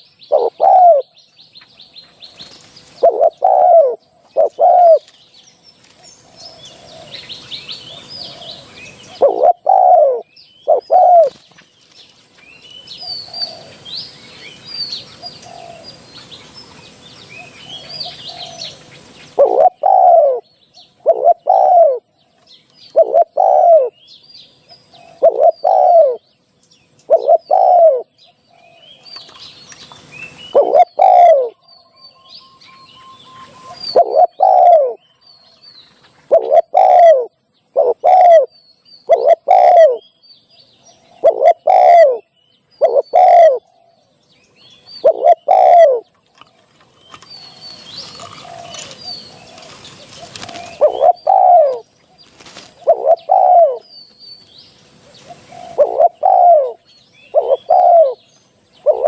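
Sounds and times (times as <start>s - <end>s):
dove cooing: 0.0s - 1.2s, 2.4s - 5.2s, 6.2s - 11.4s, 12.8s - 13.9s, 14.9s - 22.2s, 22.9s - 24.0s, 24.8s - 26.2s, 27.0s - 29.0s, 30.0s - 31.6s, 32.8s - 35.0s, 36.2s - 40.0s, 41.0s - 44.0s, 45.0s - 46.5s, 47.1s - 53.9s, 55.0s - 59.0s
small birds chirping faintly: 0.0s - 59.0s.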